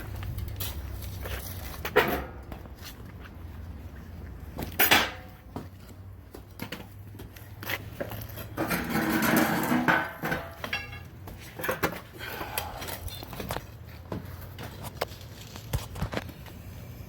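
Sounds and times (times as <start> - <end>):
hand tools knocking and scraping: 8.0 - 14.9.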